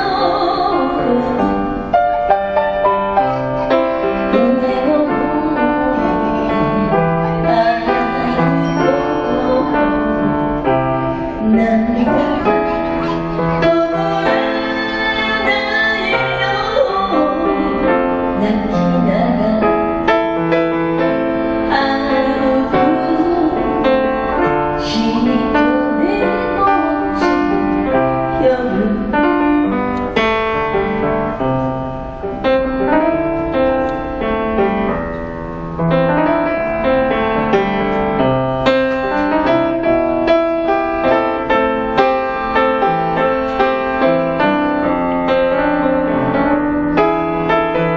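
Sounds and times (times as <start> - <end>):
piano accompaniment: 0.0 - 47.9
person singing: 4.3 - 19.8, 24.8 - 27.8.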